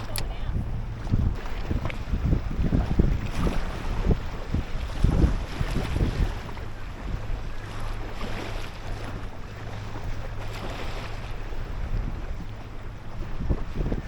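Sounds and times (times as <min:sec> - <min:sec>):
outboard motor running: 0:00.0 - 0:14.0
water rushing against hull: 0:00.0 - 0:14.0
wind buffeting microphone: 0:00.0 - 0:14.0.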